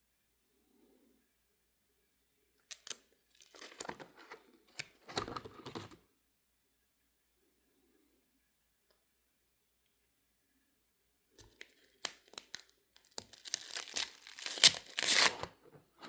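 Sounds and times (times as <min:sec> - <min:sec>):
paper crinkling and rustling: 0:02.7 - 0:06.0, 0:11.5 - 0:16.0.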